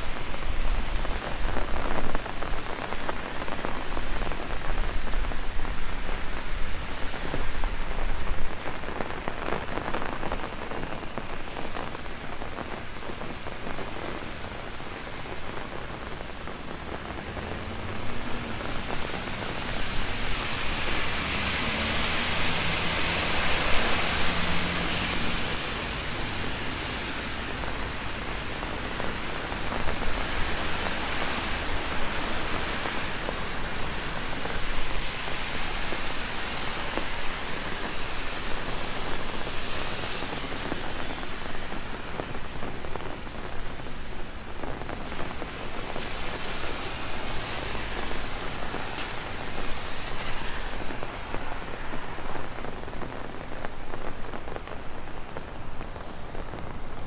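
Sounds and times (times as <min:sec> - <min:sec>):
heavy rain on umbrella: 0:00.0 - 0:57.0.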